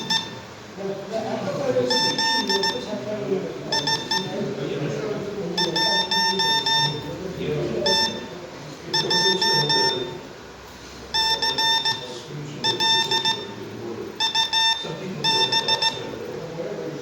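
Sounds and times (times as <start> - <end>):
morse code tone beeping: 0.0 - 0.5, 1.8 - 3.1, 3.7 - 4.6, 5.5 - 7.2, 7.8 - 8.3, 8.9 - 10.3, 11.1 - 16.2.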